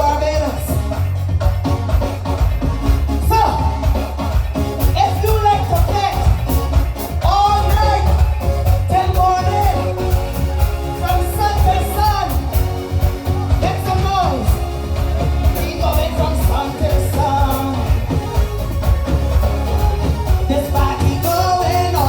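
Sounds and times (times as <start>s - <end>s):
live soca music: 0.0s - 22.0s
person singing: 7.1s - 22.0s.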